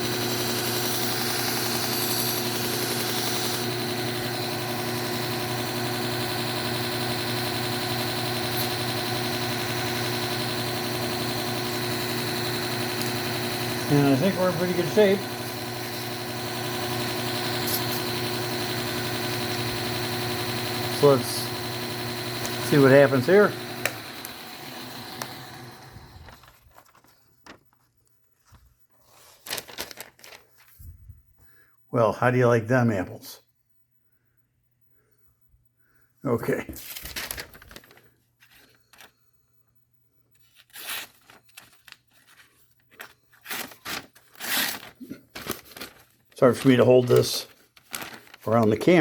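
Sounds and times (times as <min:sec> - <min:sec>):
belt sharpener motor whining: 0:00.0 - 0:26.5
knife slicing paper: 0:40.6 - 0:42.2, 0:43.0 - 0:48.5.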